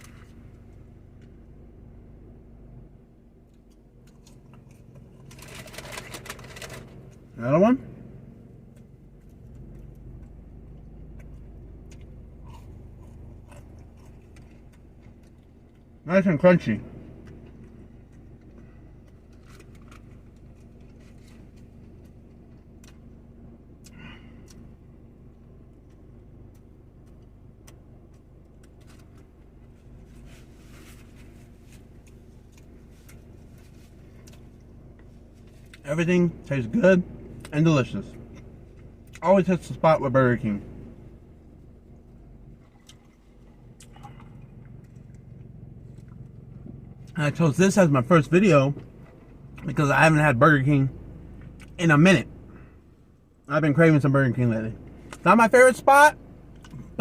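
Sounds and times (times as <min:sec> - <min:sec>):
steady low hum: 0:00.0 - 0:57.0
person chewing crispy food: 0:08.7 - 0:16.0, 0:17.2 - 0:23.1, 0:42.6 - 0:46.6.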